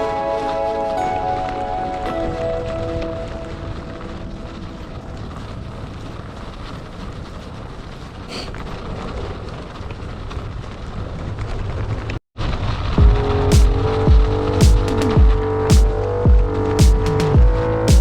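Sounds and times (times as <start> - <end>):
bike tyre rumble: 2.7 - 18.0
electronic music with deep bass: 13.0 - 18.0.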